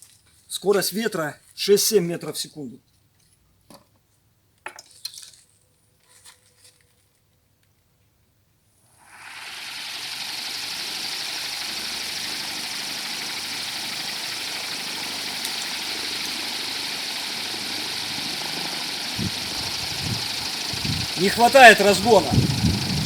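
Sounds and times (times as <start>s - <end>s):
electric fan blowing air: 9.0s - 23.0s.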